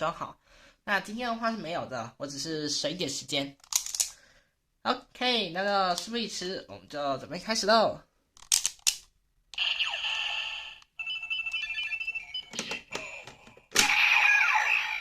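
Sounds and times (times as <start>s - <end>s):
toy electronic sound effects: 9.6s - 13.2s, 13.8s - 15.0s.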